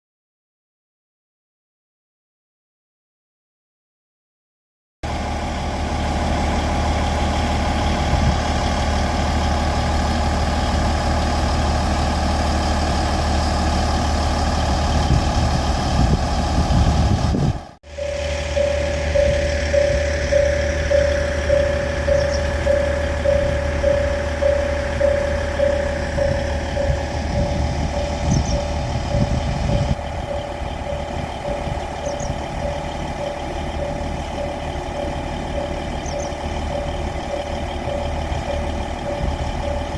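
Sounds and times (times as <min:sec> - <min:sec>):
vehicle engine idling: 0:05.0 - 0:39.9
level crossing warning bell: 0:17.8 - 0:39.9.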